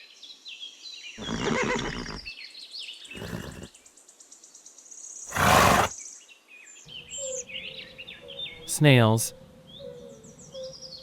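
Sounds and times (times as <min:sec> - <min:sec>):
faint birdsong: 0:00.0 - 0:11.0
pony snorting: 0:03.2 - 0:03.7, 0:05.3 - 0:05.9.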